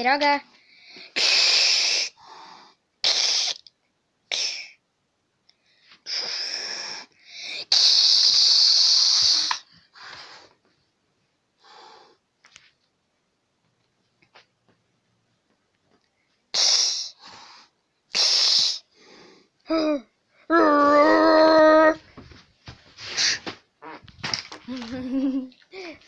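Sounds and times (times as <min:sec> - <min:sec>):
cat hissing: 0:01.0 - 0:03.7, 0:04.3 - 0:04.8, 0:06.0 - 0:10.5, 0:16.5 - 0:19.4.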